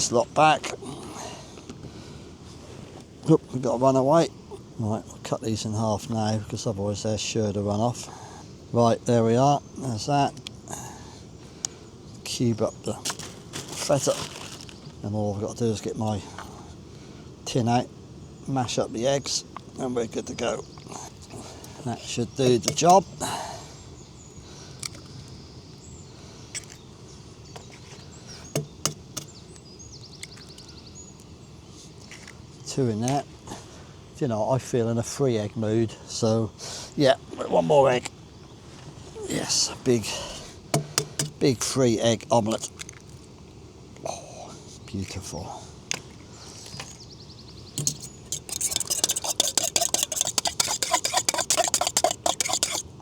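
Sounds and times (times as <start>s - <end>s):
eggs cracked against tin: 22.4s - 23.0s, 28.6s - 29.3s, 40.8s - 41.4s, 47.8s - 52.9s.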